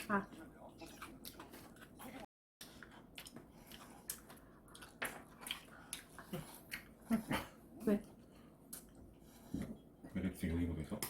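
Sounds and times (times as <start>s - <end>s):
chewing crunchy food: 0.0s - 7.3s.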